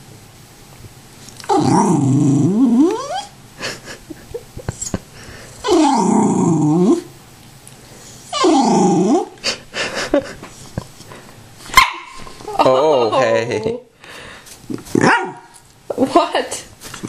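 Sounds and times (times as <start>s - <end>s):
dog growly yowls: 1.4s - 3.3s, 5.6s - 7.1s, 8.3s - 9.4s.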